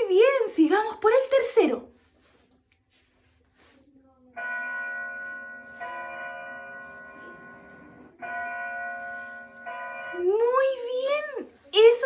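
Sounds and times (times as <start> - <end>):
church bells ringing: 4.4 - 11.4.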